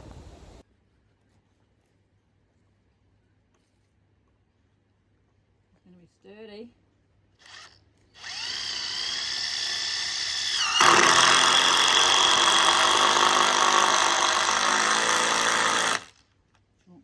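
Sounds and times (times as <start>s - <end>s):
cordless drill boring into wood: 7.4s - 16.2s.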